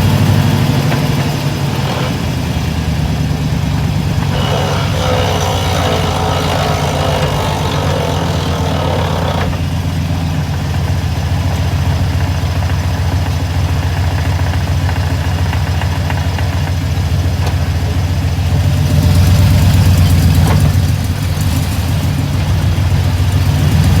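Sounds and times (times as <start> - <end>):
higher rough noise: 0.0 - 10.2
pickup truck engine idling: 0.0 - 24.0.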